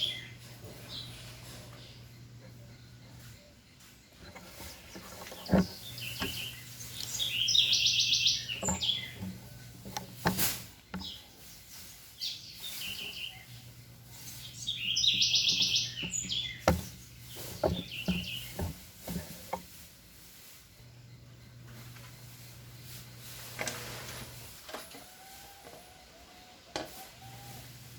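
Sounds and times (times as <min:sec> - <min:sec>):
bird chirping trills: 0:00.0 - 0:19.1
steady low hum: 0:00.0 - 0:24.8.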